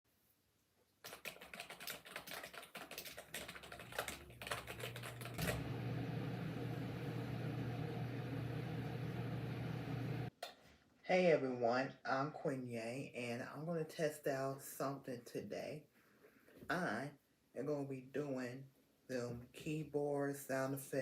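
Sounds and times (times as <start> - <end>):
keyboard typing: 1.0 - 5.7
low steady hum: 3.9 - 10.3.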